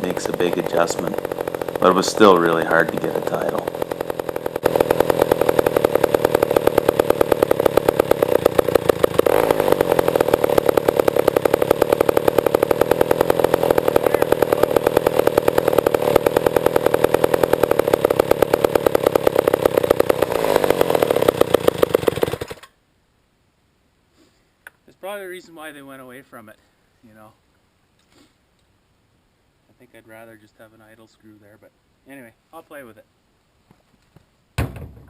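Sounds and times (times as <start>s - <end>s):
two-stroke chainsaw engine running: 0.0s - 22.7s.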